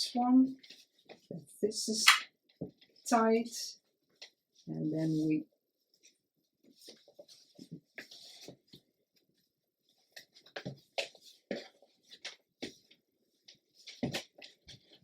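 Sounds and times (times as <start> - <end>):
paper rustling: 5.9 - 8.9, 9.9 - 15.0.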